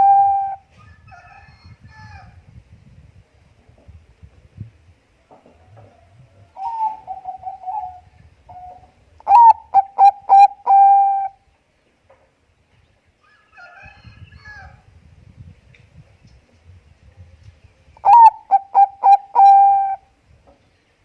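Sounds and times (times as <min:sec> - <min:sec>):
dove cooing: 0:00.0 - 0:00.7, 0:05.5 - 0:11.4, 0:18.0 - 0:20.1.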